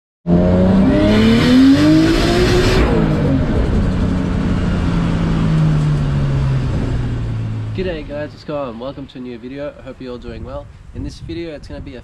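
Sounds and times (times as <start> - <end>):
turbocharged car engine accelerating: 0.3 - 9.5.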